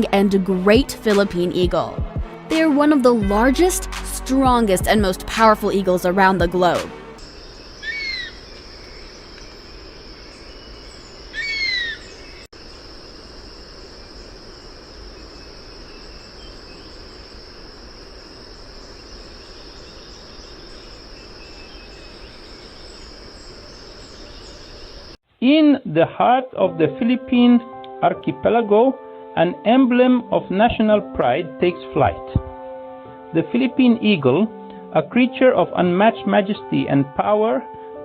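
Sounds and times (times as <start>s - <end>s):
forest background: 0.0s - 28.1s
insects droning: 7.2s - 25.2s
bird whistled calls: 7.4s - 9.2s, 11.3s - 12.4s.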